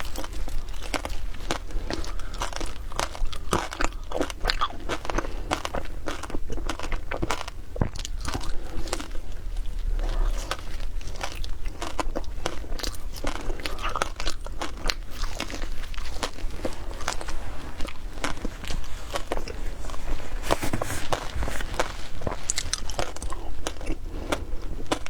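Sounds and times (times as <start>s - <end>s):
ice being chewed: 0.0s - 25.0s.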